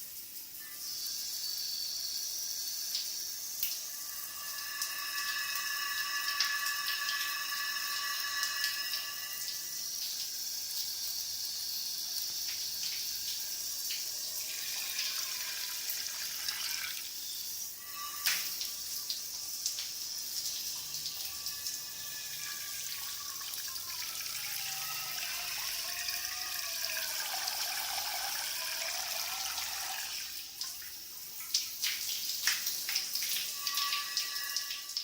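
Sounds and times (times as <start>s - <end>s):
shower spraying water: 0.0s - 35.0s
water splashes and drips: 0.0s - 35.0s
wavering hollow tone: 3.8s - 10.1s.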